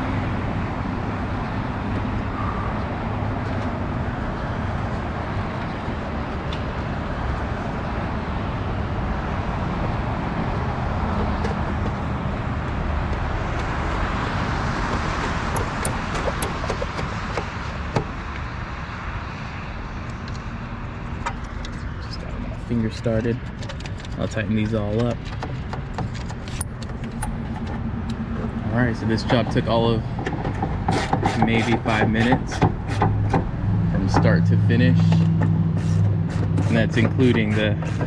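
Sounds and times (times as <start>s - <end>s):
road traffic rumble: 0.0s - 38.0s.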